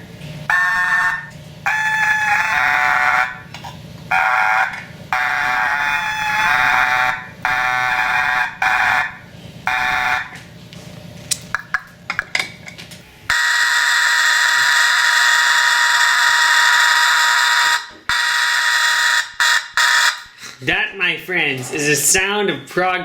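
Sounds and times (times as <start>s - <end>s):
fire alarm horn blasts: 0.5s - 3.5s, 4.1s - 10.5s, 13.3s - 20.4s.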